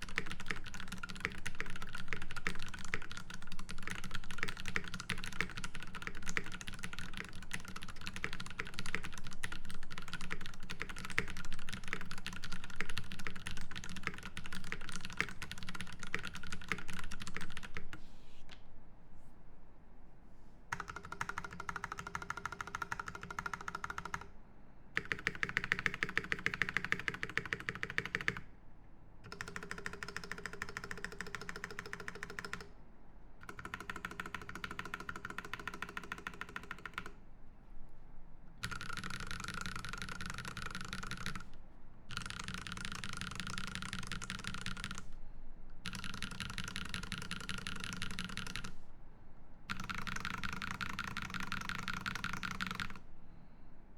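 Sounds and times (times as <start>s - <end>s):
mechanical keyboard typing: 0.0s - 18.0s, 20.7s - 24.3s, 25.0s - 28.5s, 29.3s - 32.7s, 33.4s - 37.2s, 38.6s - 45.1s, 45.8s - 48.8s, 49.7s - 53.0s.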